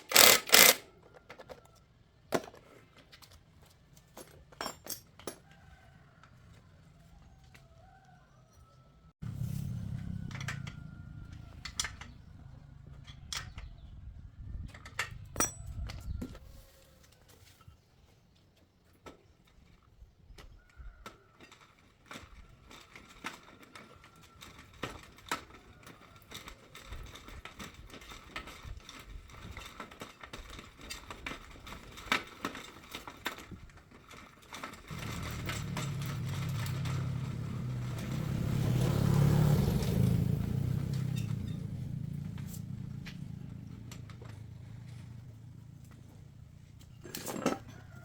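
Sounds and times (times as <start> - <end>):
low motor hum: 9.2 - 14.4, 34.9 - 47.8.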